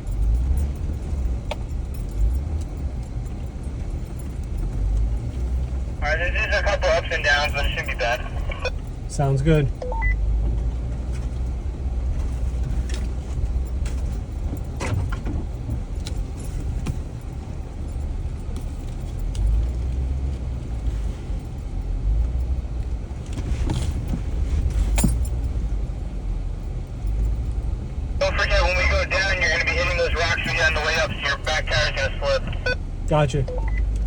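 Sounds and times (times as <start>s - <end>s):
off-road vehicle engine rumbling: 0.0s - 34.0s
vehicle rattling over bumps: 10.2s - 33.1s.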